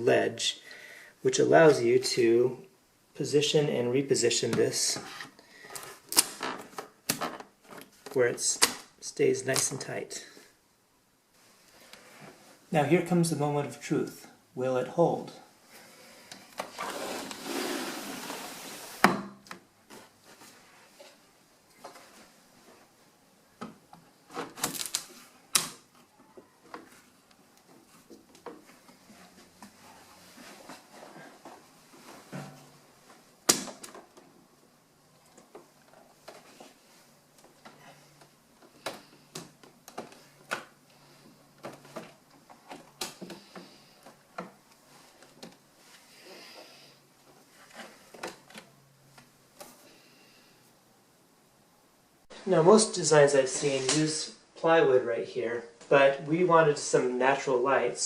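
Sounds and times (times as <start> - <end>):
air conditioner scraping on wood: 16.8 - 19.0.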